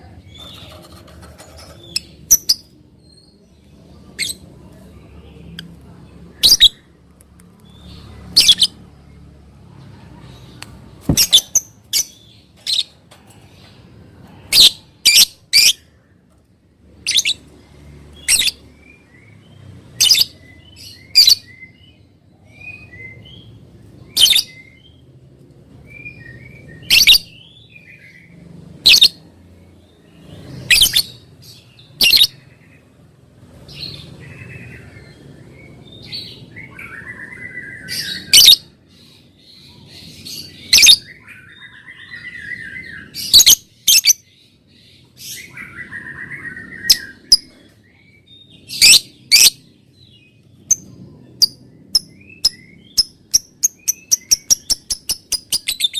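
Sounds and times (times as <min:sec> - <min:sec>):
bird chattering: 0:50.6 - 0:55.9.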